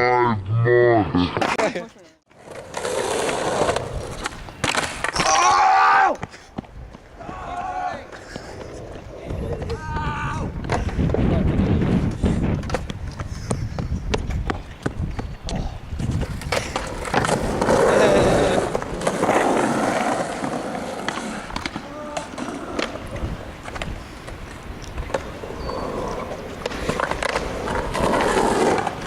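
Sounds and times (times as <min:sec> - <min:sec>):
skateboard wheels rolling on pavement: 0:02.3 - 0:29.0
skateboard clacking on ground: 0:02.4 - 0:05.5, 0:06.2 - 0:11.2, 0:12.1 - 0:29.0.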